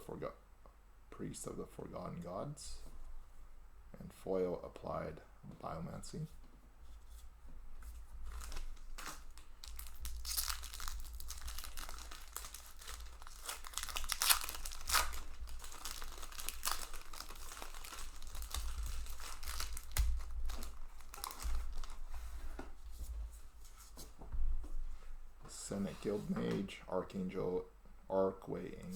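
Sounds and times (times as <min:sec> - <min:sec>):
foil wrapper tearing and crinkling: 0:08.3 - 0:22.1.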